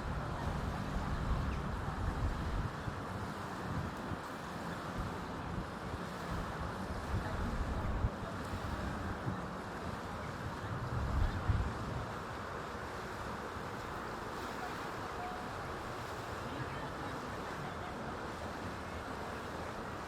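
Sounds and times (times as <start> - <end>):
wind buffeting microphone: 0.0 - 4.3, 5.0 - 12.2
waves washing on beach: 0.0 - 20.0.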